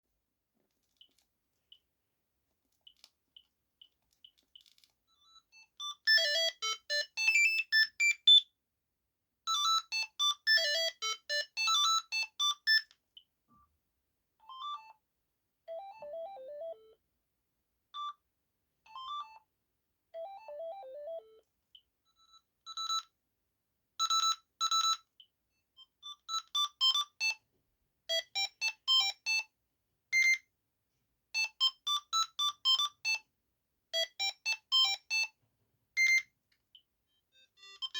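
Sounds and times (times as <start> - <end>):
phone electronic ringtone melodies: 5.8 - 8.4, 9.5 - 12.8, 14.4 - 14.9, 15.7 - 17.0, 18.9 - 19.4, 20.2 - 21.4.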